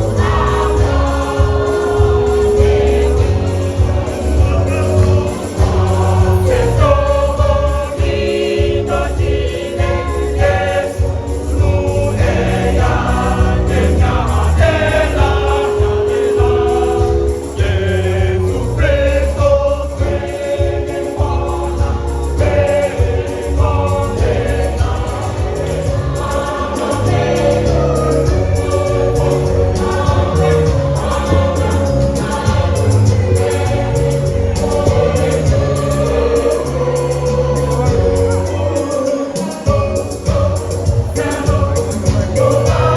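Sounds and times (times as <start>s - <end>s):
heavy bass and beat: 0.0s - 38.5s
choir singing gospel: 0.0s - 42.9s.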